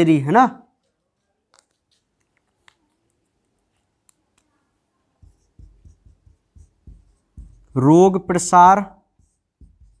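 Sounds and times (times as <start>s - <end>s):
soft low thumps: 5.2s - 7.8s.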